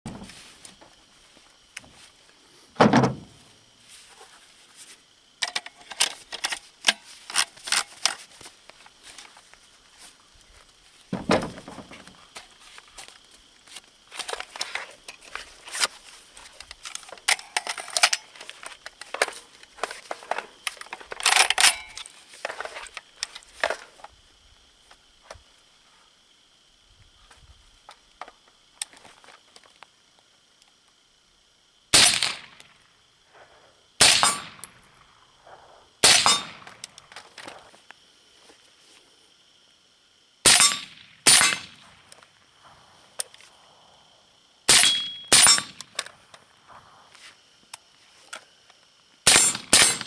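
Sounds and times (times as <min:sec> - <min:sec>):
sharp clicks and rattles: 0:14.1 - 0:24.1
suppressed rifle shots: 0:32.0 - 0:32.5.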